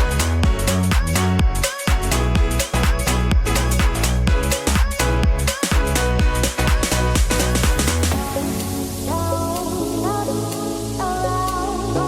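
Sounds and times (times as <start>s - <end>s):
punchy kick-drum beat: 0.0s - 8.8s
electronic dance music: 0.0s - 12.0s.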